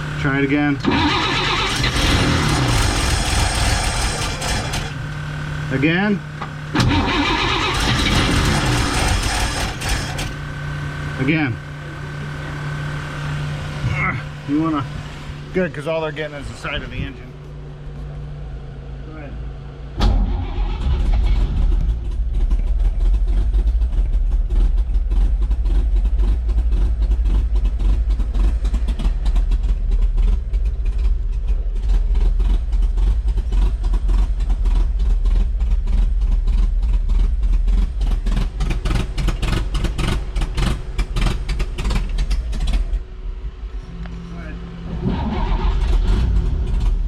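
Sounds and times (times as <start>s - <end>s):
engine popping trying to fire: 0.8s - 5.0s, 6.7s - 10.4s, 20.0s - 43.0s
engine cranking on starter: 0.8s - 5.2s, 6.7s - 10.4s, 20.0s - 24.2s, 38.3s - 43.0s, 44.9s - 47.0s.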